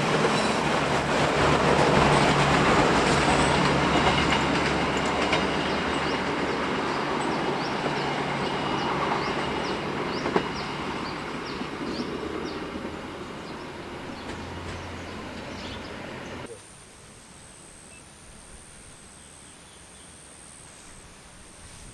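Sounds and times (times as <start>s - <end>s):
train rumbling on rails: 0.0s - 16.5s.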